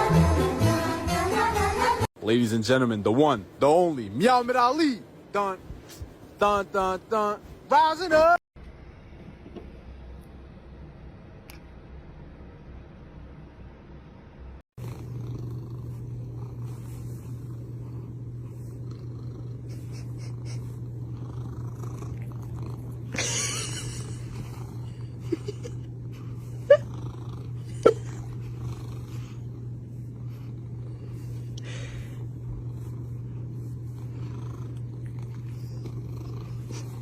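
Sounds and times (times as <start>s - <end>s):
cat purring: 14.8s - 37.0s.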